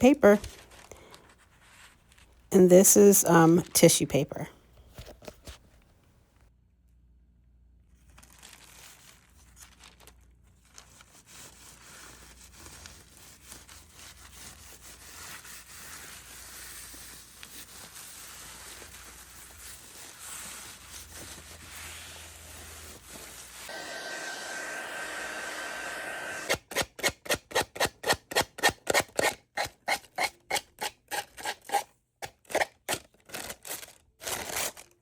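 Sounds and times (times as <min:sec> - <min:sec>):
tissue paper crinkling: 0:00.3 - 0:02.4, 0:08.0 - 0:23.7.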